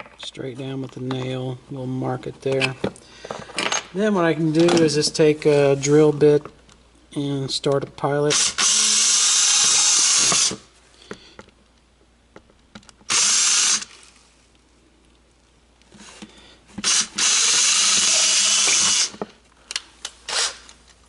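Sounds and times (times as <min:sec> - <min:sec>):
power drill drilling through plastic: 0:08.3 - 0:10.6, 0:13.1 - 0:13.9, 0:16.8 - 0:19.2.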